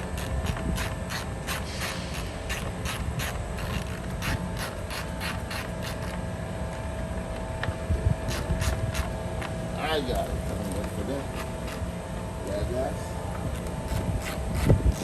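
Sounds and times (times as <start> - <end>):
ratchet wrench clicking: 0.0 - 6.2
steady low hum: 0.0 - 15.0.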